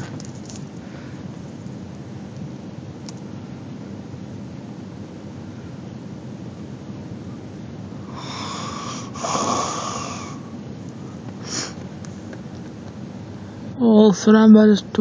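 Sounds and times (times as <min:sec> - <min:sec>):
steady background hiss: 0:00.0 - 0:15.0
small child snoring: 0:08.1 - 0:10.4.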